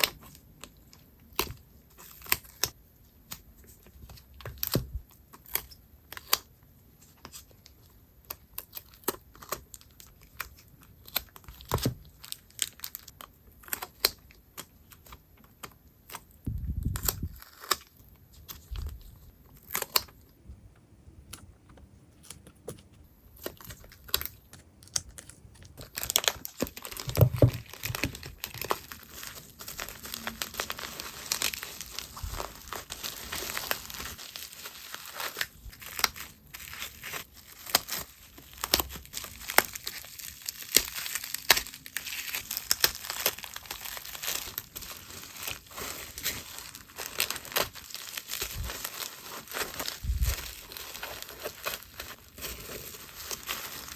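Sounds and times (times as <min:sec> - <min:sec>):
plastic packaging crinkling: 0:08.5 - 0:15.2, 0:23.4 - 0:53.9.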